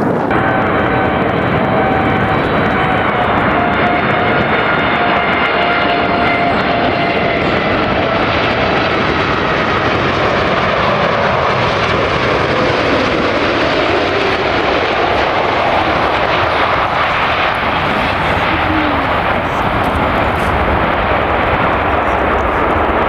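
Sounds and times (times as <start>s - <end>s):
jet engines passing close: 0.0s - 23.0s.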